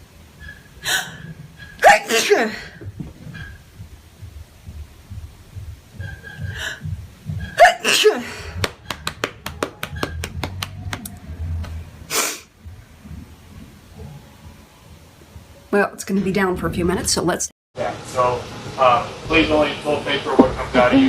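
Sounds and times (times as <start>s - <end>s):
woman sneezing: 1.8s - 2.8s, 7.6s - 8.4s
short hissing burst: 12.1s - 12.5s.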